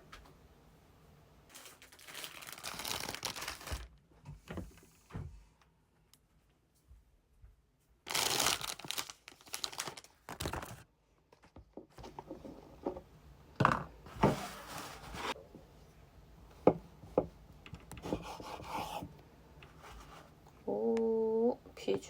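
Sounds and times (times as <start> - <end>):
plastic packaging rustling: 1.5 - 3.9, 8.1 - 10.8.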